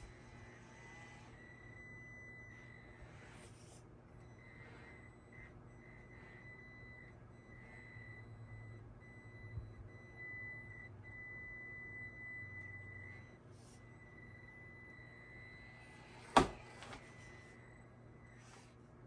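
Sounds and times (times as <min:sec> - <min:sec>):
electric motor whining: 0:00.0 - 0:08.8.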